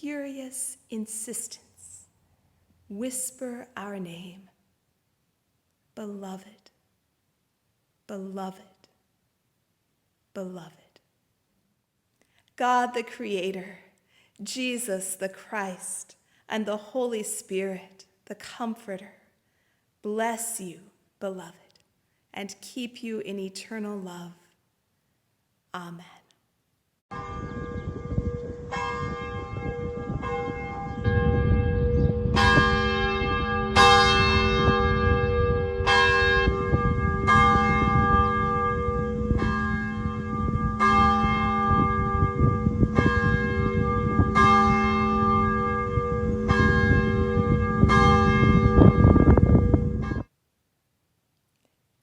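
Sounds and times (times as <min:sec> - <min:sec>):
church bell ringing: 0:27.1 - 0:50.2.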